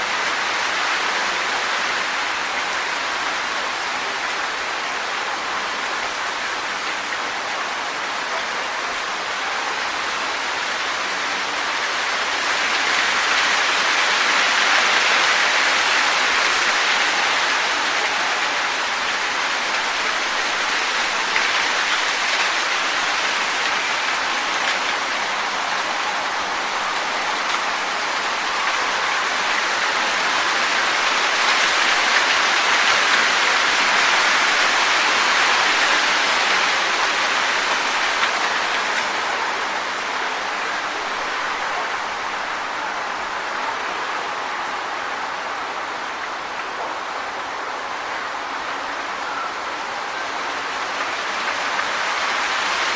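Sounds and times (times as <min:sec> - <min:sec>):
wind rustling tree leaves: 0:00.0 - 0:52.9.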